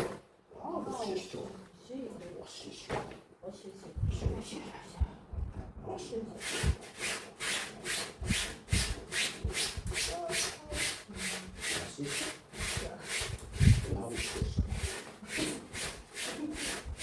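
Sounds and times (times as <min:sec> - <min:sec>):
rhythmic scrubbing strokes: 0:06.4 - 0:17.0.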